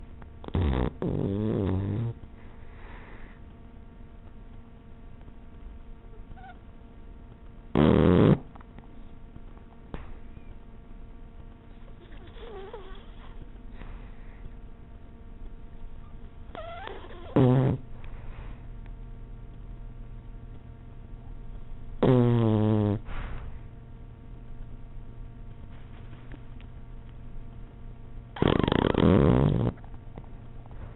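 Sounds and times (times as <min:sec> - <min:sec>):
puppy snoring: 0:00.0 - 0:03.4, 0:06.1 - 0:06.6, 0:07.6 - 0:10.6, 0:11.7 - 0:14.6, 0:16.0 - 0:18.6, 0:21.2 - 0:23.6, 0:28.3 - 0:30.9
soft breath: 0:02.3 - 0:03.6, 0:12.0 - 0:14.7, 0:17.9 - 0:18.8, 0:23.0 - 0:23.8
puppy breathing: 0:11.7 - 0:14.6.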